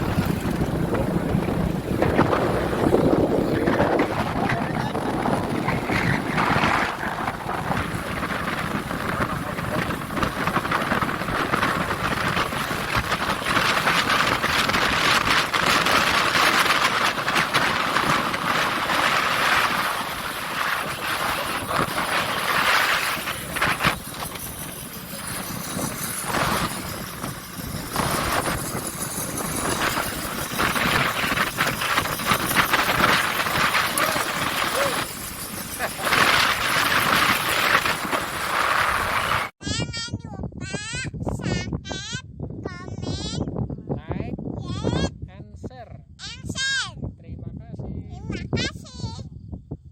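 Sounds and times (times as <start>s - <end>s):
vehicle or machinery noise: 0.0s - 39.6s.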